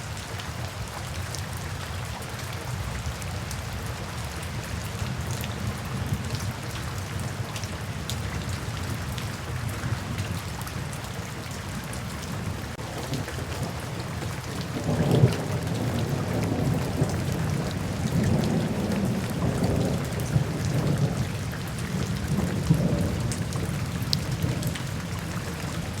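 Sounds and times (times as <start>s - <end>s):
steady rain: 0.0s - 26.0s
thunder rumbling: 12.4s - 26.0s.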